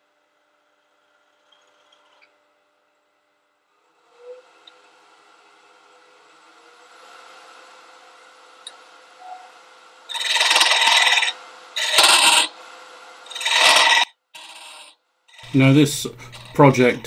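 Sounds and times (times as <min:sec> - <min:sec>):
lathe humming: 0:03.7 - 0:17.0.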